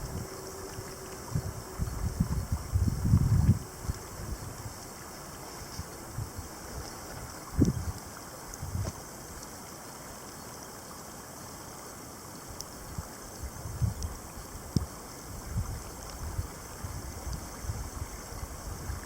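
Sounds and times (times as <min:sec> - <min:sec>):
wind buffeting microphone: 0:00.0 - 0:04.9, 0:05.6 - 0:08.0, 0:08.6 - 0:09.0, 0:12.9 - 0:19.0
steady outdoor hiss: 0:00.0 - 0:19.0
faint ticks: 0:06.7 - 0:09.6, 0:12.5 - 0:15.0.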